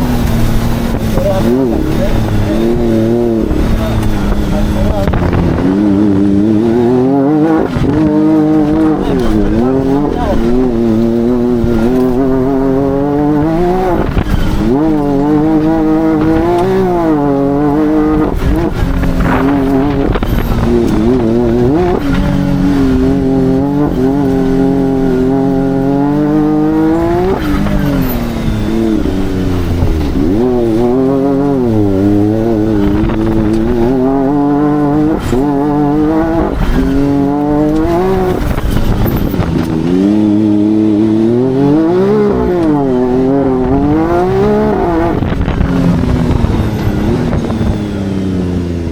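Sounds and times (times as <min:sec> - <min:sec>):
off-road vehicle engine revving: 0:00.0 - 0:48.9.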